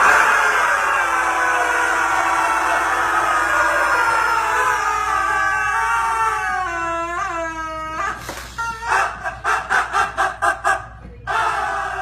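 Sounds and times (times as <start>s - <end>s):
animal howling: 0.0s - 9.2s.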